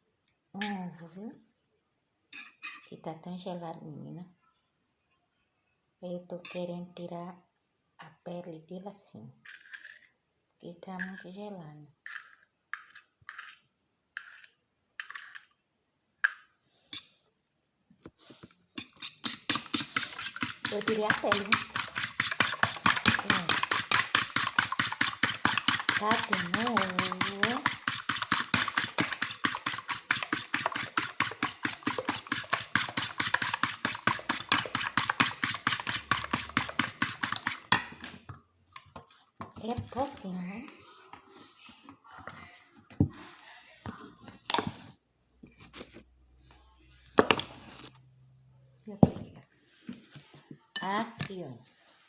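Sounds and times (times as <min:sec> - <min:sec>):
utensil clacking against mug: 0:19.2 - 0:37.8
utensil knocking mug: 0:19.2 - 0:37.9.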